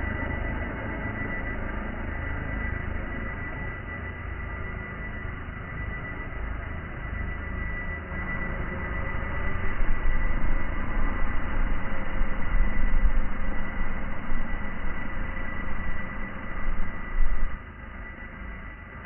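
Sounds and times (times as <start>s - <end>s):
drone motors humming: 6.4s - 19.0s
low rumble: 8.7s - 19.0s.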